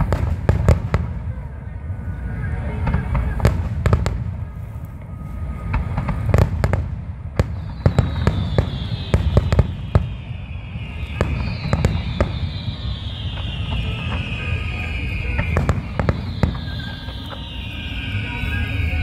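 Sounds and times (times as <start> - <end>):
fireworks bangs: 0.0 - 19.0
low rumble: 0.0 - 19.0
high falling whistles: 7.4 - 19.0.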